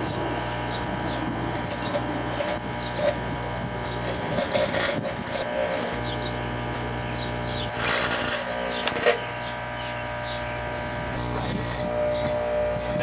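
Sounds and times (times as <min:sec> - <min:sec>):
microwave oven humming: 0:00.0 - 0:13.0
plasma crackling and buzzing: 0:00.0 - 0:13.0.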